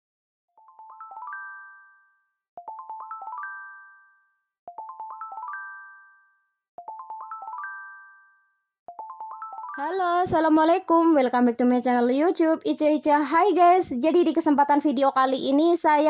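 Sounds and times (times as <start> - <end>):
chime-like electronic jingle: 0.6 - 9.8.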